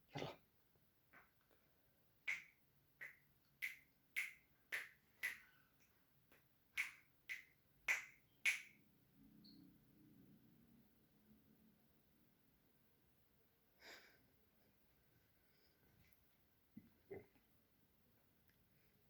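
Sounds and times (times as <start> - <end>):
bird chirping: 7.9 - 9.8.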